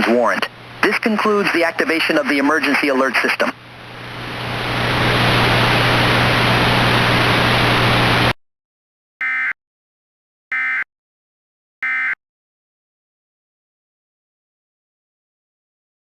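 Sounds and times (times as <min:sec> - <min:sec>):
steady low hum: 0:00.0 - 0:08.3
loud static hiss: 0:00.0 - 0:08.4.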